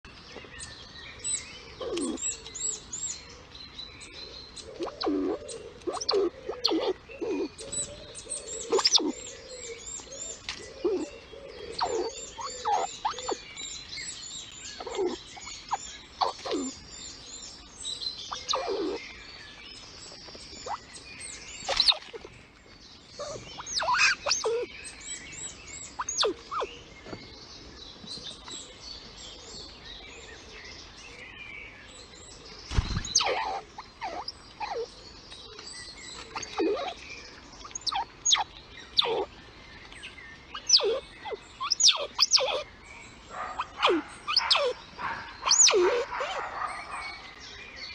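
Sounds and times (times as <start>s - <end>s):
squirrel squeaking: 1.8s - 2.4s, 4.6s - 7.9s, 8.6s - 9.2s, 10.7s - 11.1s, 11.7s - 13.7s, 14.8s - 16.7s, 18.3s - 19.0s, 21.6s - 22.3s, 23.2s - 25.2s, 25.9s - 26.7s, 32.9s - 34.9s, 36.3s - 37.0s, 37.6s - 39.3s, 40.5s - 42.6s, 43.6s - 44.8s, 45.4s - 46.4s.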